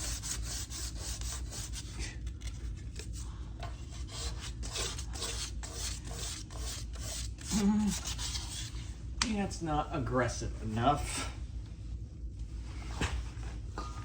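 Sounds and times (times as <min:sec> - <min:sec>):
sandpaper rubbing on metal: 0:00.0 - 0:02.0, 0:03.9 - 0:08.8.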